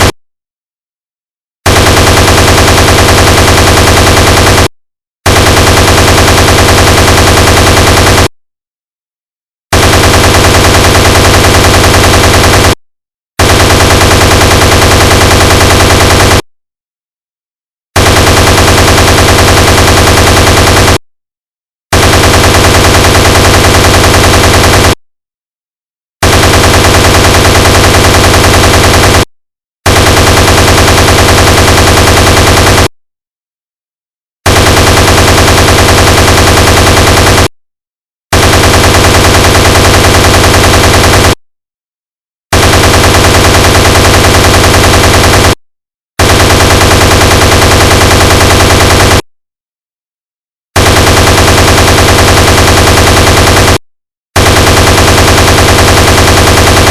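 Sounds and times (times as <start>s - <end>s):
heavy machine gun bursts: 1.7s - 4.7s, 5.3s - 8.3s, 9.7s - 12.8s, 13.4s - 16.4s, 18.0s - 21.0s, 21.9s - 25.0s, 26.2s - 29.3s, 29.9s - 32.9s, 34.5s - 37.5s, 38.3s - 41.4s, 42.5s - 45.6s, 46.2s - 49.2s, 50.8s - 53.8s, 54.4s - 56.9s.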